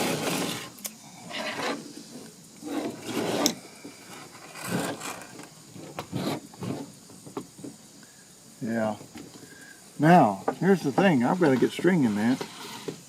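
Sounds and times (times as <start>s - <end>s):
plastic parts scraping and rubbing: 0.0s - 7.0s, 10.6s - 13.0s.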